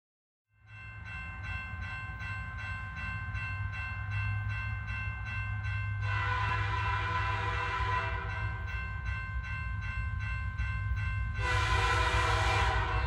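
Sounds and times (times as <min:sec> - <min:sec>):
train rumbling: 0:00.7 - 0:13.0
train horn chord: 0:06.0 - 0:08.6, 0:11.4 - 0:13.0.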